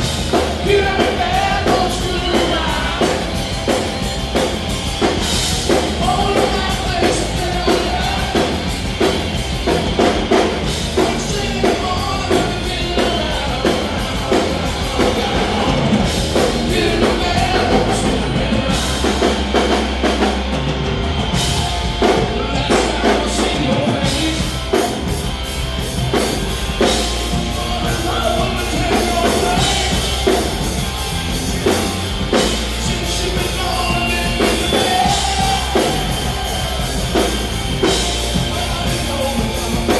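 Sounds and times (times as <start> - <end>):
lead singer singing: 0.0 - 39.9
live rock band playing: 0.0 - 39.9
rock drum beat: 0.0 - 39.9.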